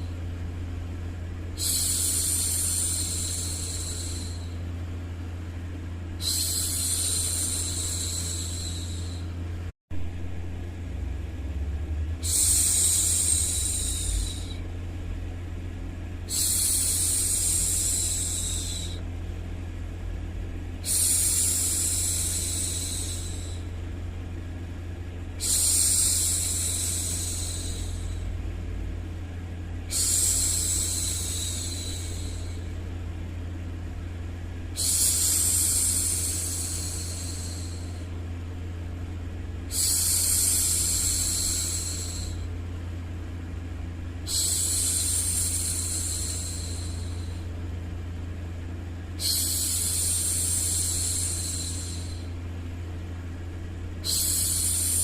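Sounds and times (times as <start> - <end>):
steady low hum: 0.0 - 55.0.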